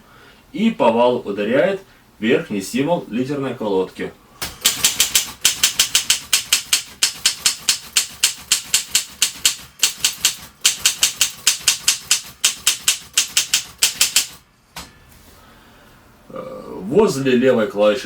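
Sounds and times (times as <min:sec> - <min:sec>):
typewriter clacking: 0:04.5 - 0:14.4.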